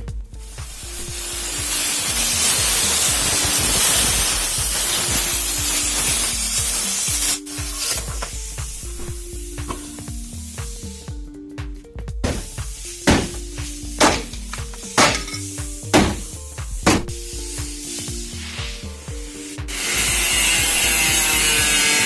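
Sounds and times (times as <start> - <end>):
music with steady beat: 0.0 - 22.0
loud hiss: 0.4 - 11.2, 12.4 - 22.0.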